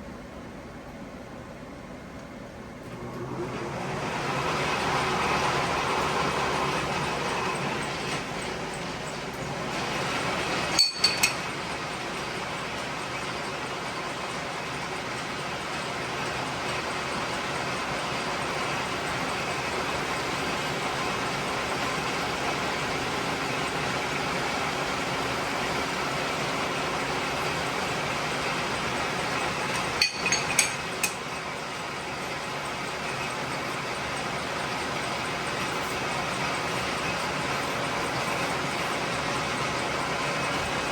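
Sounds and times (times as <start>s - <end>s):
lathe running: 2.9s - 40.9s
sharp metallic clinks: 10.8s - 11.4s.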